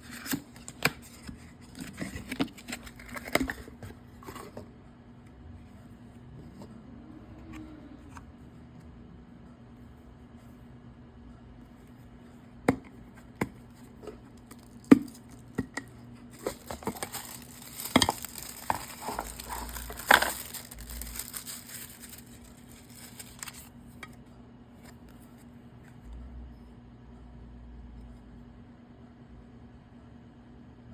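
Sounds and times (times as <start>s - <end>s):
wrapping crinkling: 14.3s - 23.7s.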